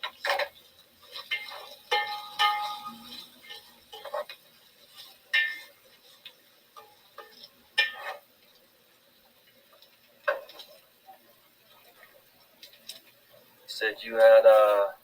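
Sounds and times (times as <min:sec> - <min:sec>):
utensil clinking against a pan: 0:00.0 - 0:08.3, 0:09.7 - 0:10.8.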